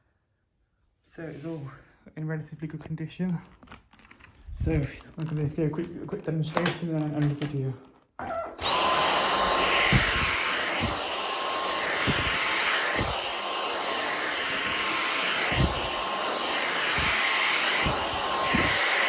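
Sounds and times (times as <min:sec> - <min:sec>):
soft low thumps: 0:08.6 - 0:11.2, 0:12.0 - 0:12.4
vacuum cleaner whine: 0:08.6 - 0:19.0.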